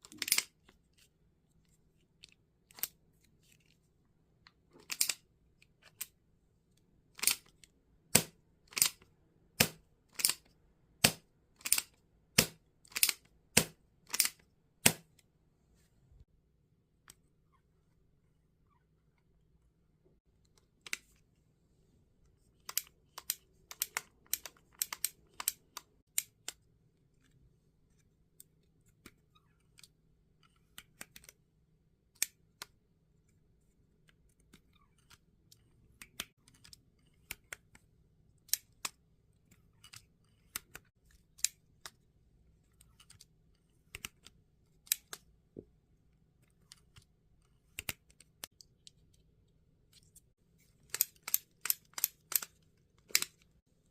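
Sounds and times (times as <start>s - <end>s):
airsoft revolver mechanism clicking: 50.9s - 52.5s.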